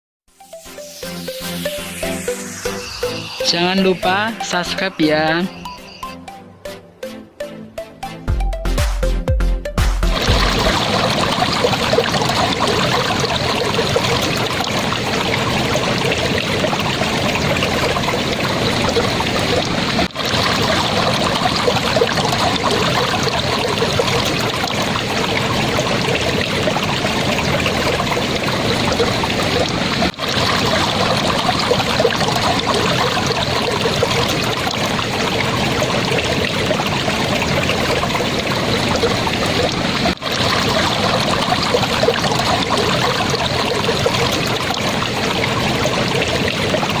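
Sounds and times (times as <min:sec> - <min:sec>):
stream babbling over stones: 0:10.1 - 0:47.0.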